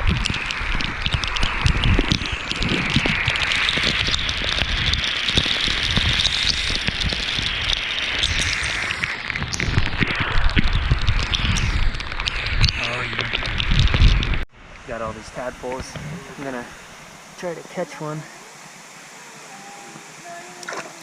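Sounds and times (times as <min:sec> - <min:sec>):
waterfall splashing into pool: 0:14.9 - 0:21.0.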